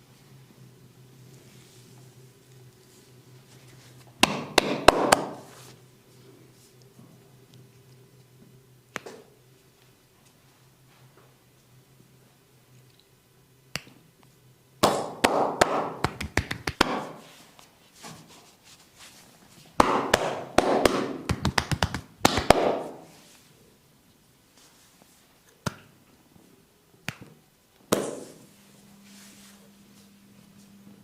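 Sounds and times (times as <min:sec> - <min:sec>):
hands striking body in massage: 0:04.2 - 0:05.5, 0:14.8 - 0:17.2, 0:19.8 - 0:23.1.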